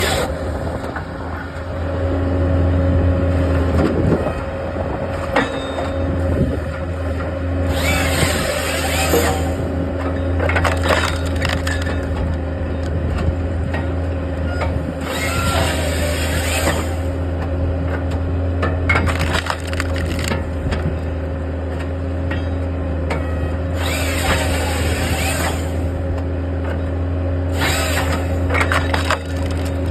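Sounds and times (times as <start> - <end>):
skid steer hydraulics droning: 0.0 - 29.9
wood cracking and splintering: 10.5 - 12.9, 18.9 - 20.8, 27.9 - 29.9.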